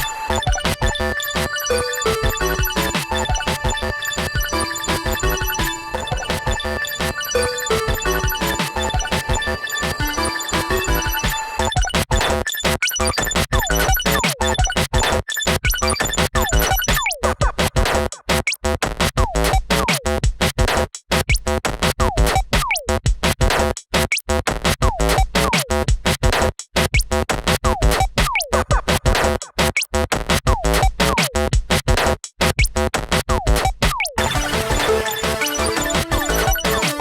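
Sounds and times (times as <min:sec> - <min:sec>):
choppy electronic music: 0:00.0 - 0:17.6, 0:34.2 - 0:37.0.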